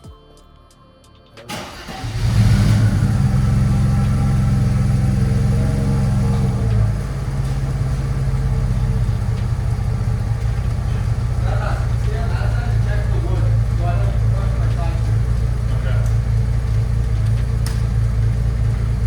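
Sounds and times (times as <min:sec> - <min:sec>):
car engine starting and running: 0:01.5 - 0:19.0.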